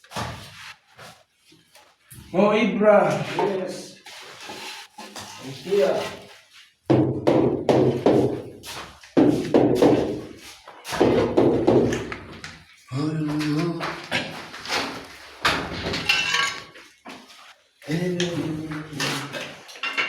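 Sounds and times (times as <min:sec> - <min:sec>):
knocking and thudding: 0:06.9 - 0:08.4, 0:09.2 - 0:10.3, 0:10.9 - 0:12.2
voices: 0:12.9 - 0:14.3, 0:17.8 - 0:19.5.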